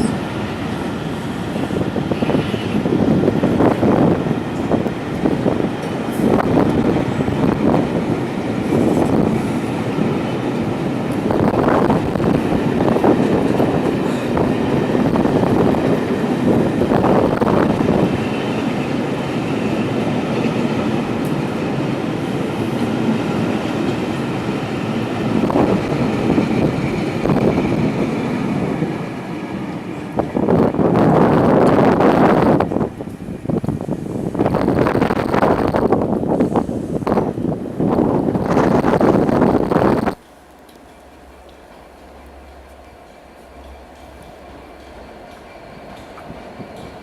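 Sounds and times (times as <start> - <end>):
train rolling past: 0.0 - 47.0
train wheels knocking: 39.6 - 47.0.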